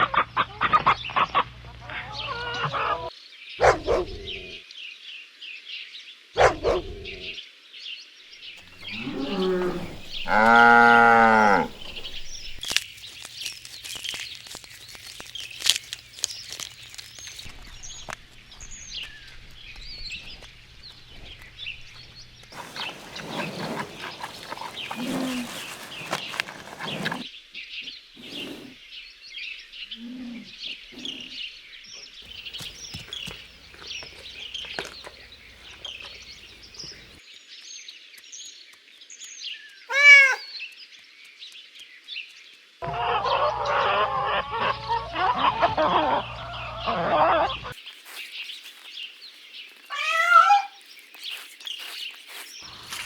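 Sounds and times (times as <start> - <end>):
farmyard fowl calling: 0.0 - 3.1, 8.7 - 12.6, 42.8 - 48.9
small birds chirping: 8.4 - 42.8, 44.7 - 53.0.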